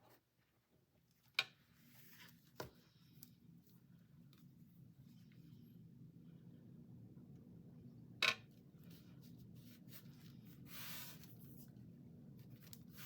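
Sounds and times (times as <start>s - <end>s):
steady low hum: 2.7s - 13.0s.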